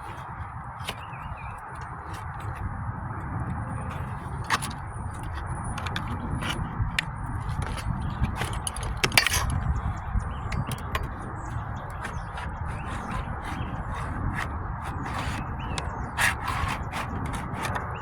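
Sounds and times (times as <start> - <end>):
metal shingle ripper clicking and scraping: 0.8 - 18.0.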